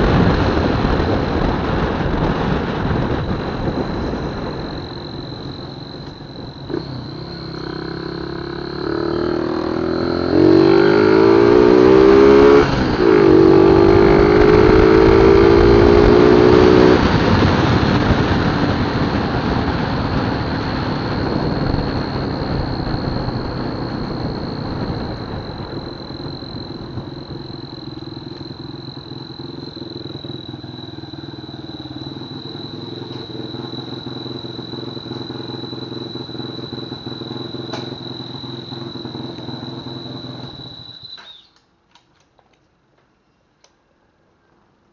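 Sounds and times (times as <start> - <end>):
motorcycle engine revving: 0.0 - 41.2
loud whistling tone: 3.1 - 17.0, 19.6 - 41.6.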